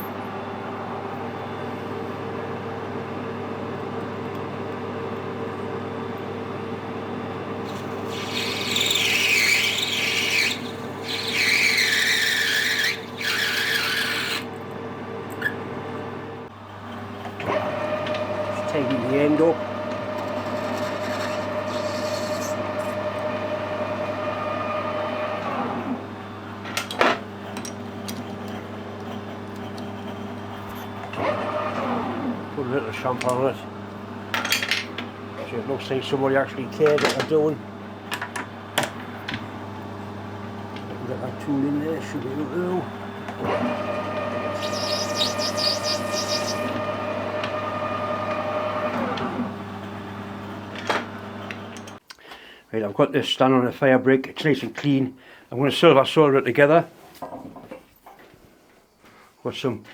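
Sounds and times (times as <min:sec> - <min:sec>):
metal lathe humming: 0:07.6 - 0:14.5, 0:16.8 - 0:52.0
cutting tool scraping metal: 0:07.7 - 0:14.5, 0:20.0 - 0:23.0, 0:44.5 - 0:46.8.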